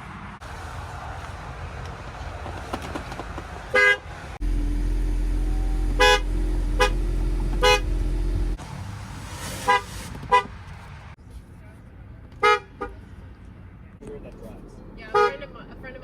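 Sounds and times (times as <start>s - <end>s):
car horn honks: 3.8s - 8.6s
steady low hum: 4.4s - 8.6s.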